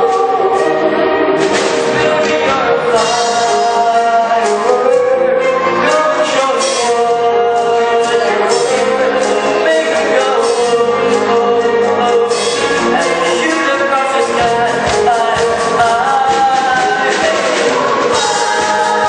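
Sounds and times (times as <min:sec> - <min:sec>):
instrumental accompaniment: 0:00.0 - 0:19.0
vocal group singing: 0:00.0 - 0:19.0.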